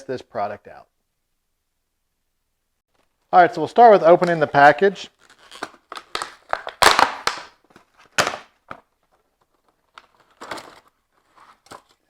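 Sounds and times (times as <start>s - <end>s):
packaging crinkling and tearing: 5.1s - 8.8s.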